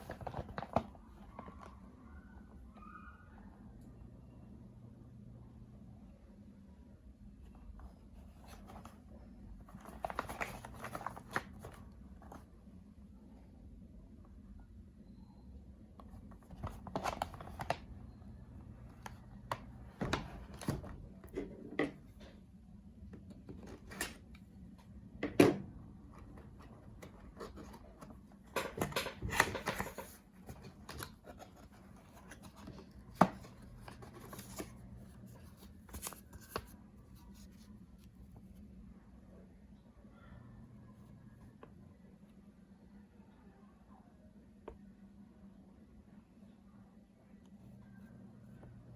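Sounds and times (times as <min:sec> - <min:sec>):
packaging rustling: 0:09.6 - 0:12.3, 0:26.3 - 0:36.8.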